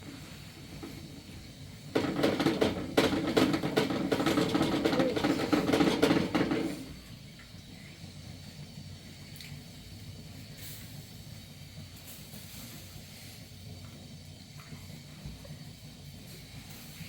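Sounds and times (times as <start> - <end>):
steady rain hiss: 0.0 - 17.0
faint drips: 9.2 - 9.7, 13.8 - 17.0.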